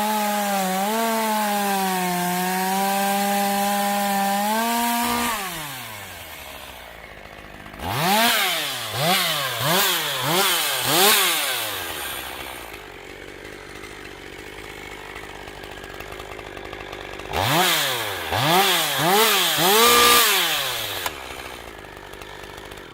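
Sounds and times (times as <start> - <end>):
chainsaw engine revving and idling: 0.0 - 22.9.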